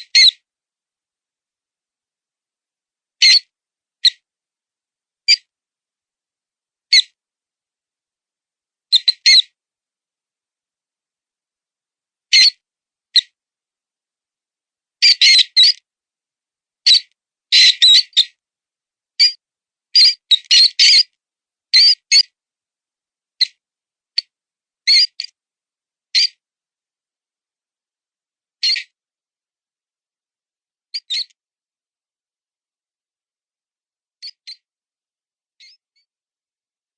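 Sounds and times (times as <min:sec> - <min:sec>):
mouse distress squeaks: 0:00.0 - 0:00.3, 0:08.9 - 0:09.5, 0:15.0 - 0:15.8, 0:16.9 - 0:18.4, 0:20.0 - 0:21.1, 0:21.7 - 0:22.3, 0:24.9 - 0:25.3, 0:26.2 - 0:26.4, 0:28.6 - 0:28.9, 0:31.0 - 0:31.3.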